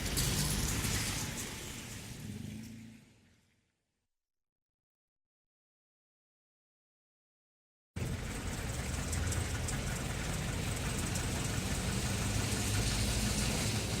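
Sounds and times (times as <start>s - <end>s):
tyres hissing on wet road: 0.0s - 2.9s, 10.3s - 14.0s
vehicle engines rumbling: 0.0s - 3.3s, 8.0s - 14.0s.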